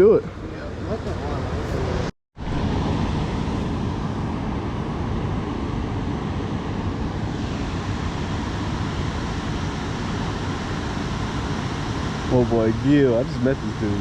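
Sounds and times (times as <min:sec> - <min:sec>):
river water rushing at a weir: 0:01.7 - 0:14.0.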